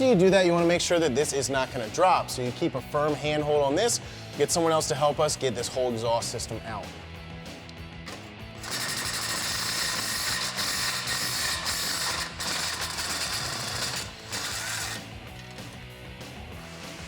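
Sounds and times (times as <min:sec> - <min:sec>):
power wrench rattling: 0:08.1 - 0:15.8.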